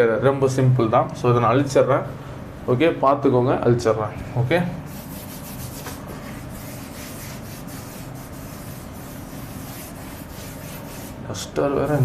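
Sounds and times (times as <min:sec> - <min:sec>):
chalk wiped off blackboard: 0:04.9 - 0:11.2.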